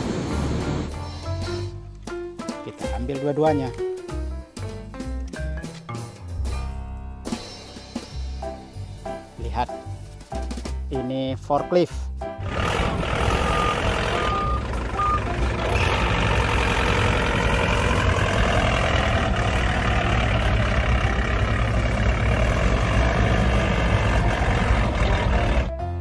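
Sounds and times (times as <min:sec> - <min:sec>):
heavy vehicle engine running: 0:12.4 - 0:25.8
reversing beeps: 0:12.7 - 0:15.4.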